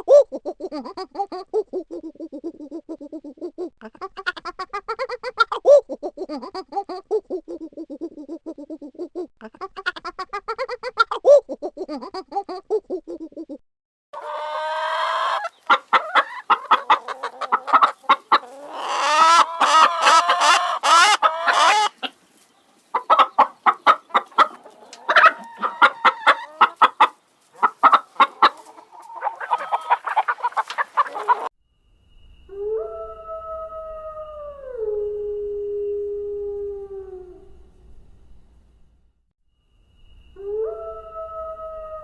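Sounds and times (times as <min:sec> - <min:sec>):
chickens clucking: 0:00.0 - 0:13.6, 0:14.2 - 0:31.5
lower animal call: 0:32.4 - 0:38.3, 0:40.0 - 0:42.0
rooster crowing: 0:40.4 - 0:42.0.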